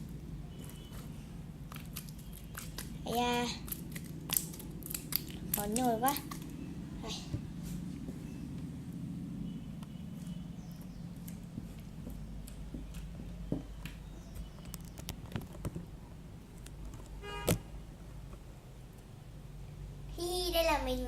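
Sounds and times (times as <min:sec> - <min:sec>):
low hum: 0:00.0 - 0:15.1
slime sticky clicks and pops: 0:03.7 - 0:06.5.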